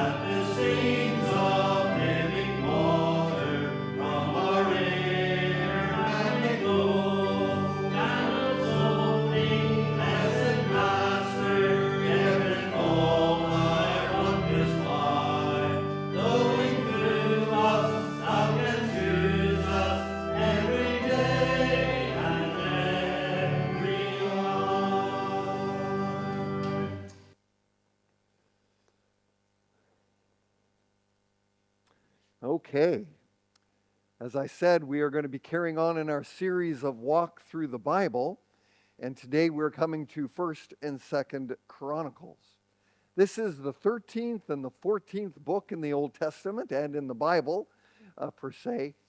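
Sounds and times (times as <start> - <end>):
voices singing together: 0.0 - 27.1
sustained instrumental chords: 0.0 - 27.2.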